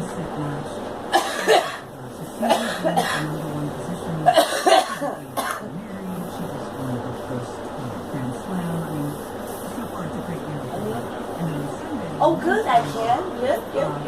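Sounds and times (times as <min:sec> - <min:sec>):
girl coughing: 0:01.1 - 0:03.4, 0:04.2 - 0:05.7.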